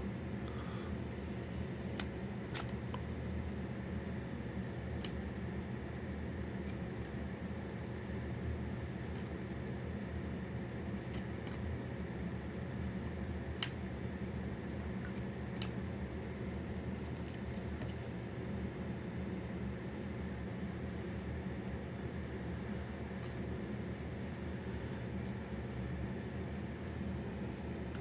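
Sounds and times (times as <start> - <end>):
low room hum: 0.0 - 28.0
cards clicking as flipped: 1.8 - 3.2.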